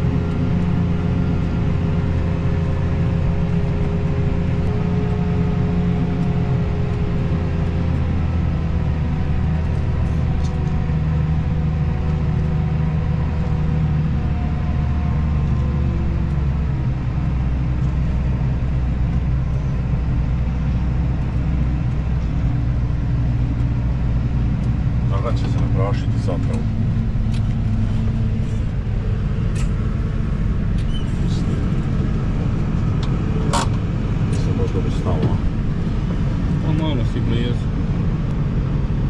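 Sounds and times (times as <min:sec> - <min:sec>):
diesel engine droning: 0:00.0 - 0:39.0.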